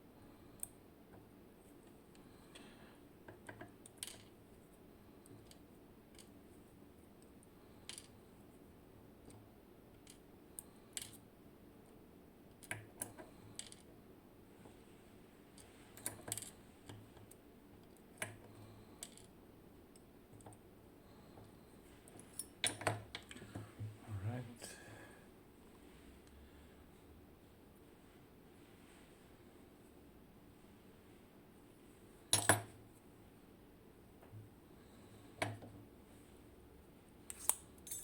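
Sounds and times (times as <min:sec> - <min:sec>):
small metal clicks and taps: 0:12.5 - 0:13.8.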